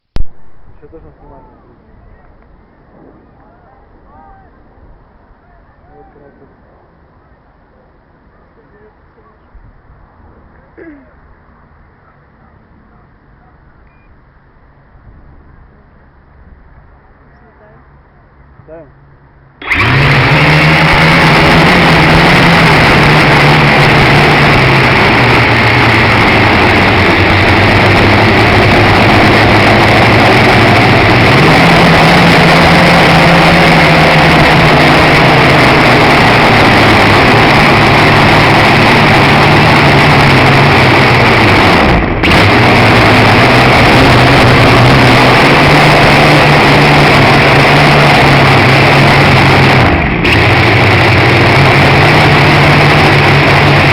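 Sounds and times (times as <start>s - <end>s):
quadcopter propellers buzzing: 19.6s - 53.9s.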